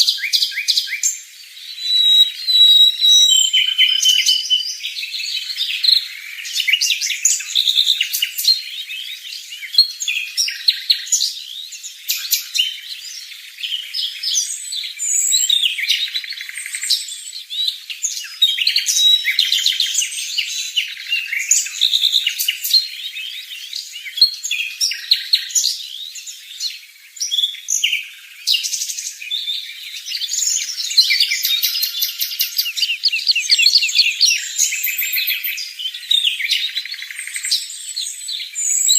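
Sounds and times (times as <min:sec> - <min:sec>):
small birds chirping: 0:00.0 - 0:38.9.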